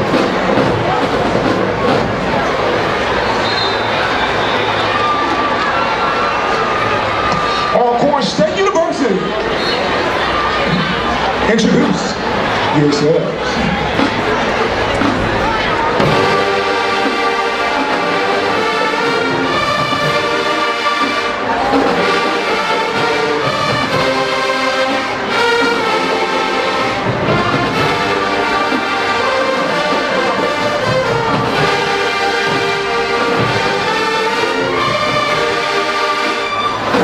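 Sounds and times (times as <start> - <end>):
marching percussion: 0.0 - 5.7, 8.0 - 37.0
brass section playing chords: 12.6 - 37.0.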